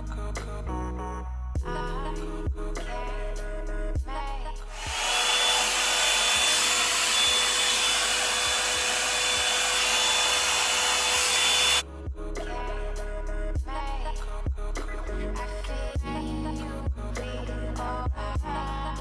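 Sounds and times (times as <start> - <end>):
background music: 0.0 - 5.0, 11.8 - 19.0
hot-air dryer brush blowing: 4.7 - 11.8.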